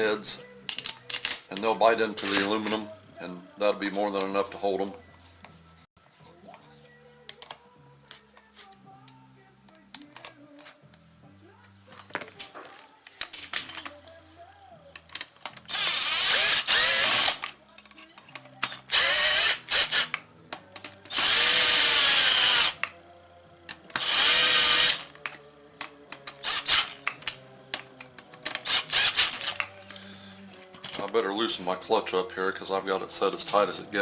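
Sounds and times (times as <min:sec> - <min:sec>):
clicks of parts handled: 0:00.7 - 0:02.8, 0:07.3 - 0:11.0, 0:11.6 - 0:14.0, 0:14.9 - 0:15.7, 0:20.1 - 0:21.2, 0:25.0 - 0:31.2
cordless drill driving screws: 0:15.7 - 0:17.5, 0:18.9 - 0:20.2, 0:21.1 - 0:22.8, 0:23.9 - 0:25.1, 0:26.4 - 0:27.1, 0:28.5 - 0:29.7.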